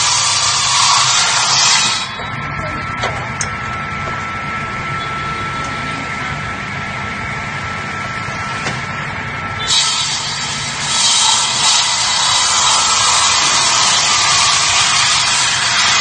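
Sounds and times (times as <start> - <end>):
machine motor whining: 1.6 - 16.0
loud hissing: 9.6 - 16.0.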